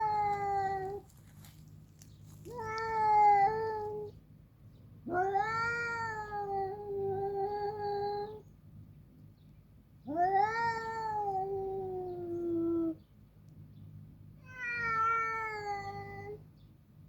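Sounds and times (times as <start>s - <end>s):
cat yowling: 0.0s - 1.1s, 2.5s - 4.1s, 5.1s - 8.4s, 10.1s - 13.0s, 14.5s - 16.4s.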